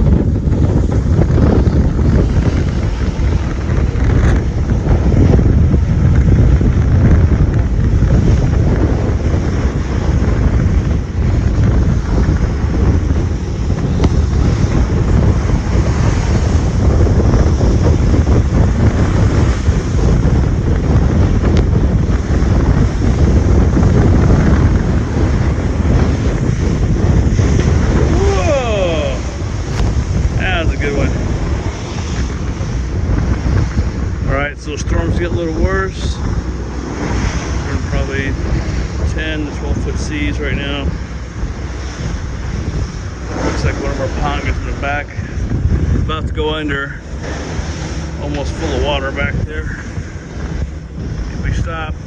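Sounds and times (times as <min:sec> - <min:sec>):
rough seas rushing: 0:00.0 - 0:52.0
wind buffeting microphone: 0:00.0 - 0:52.0.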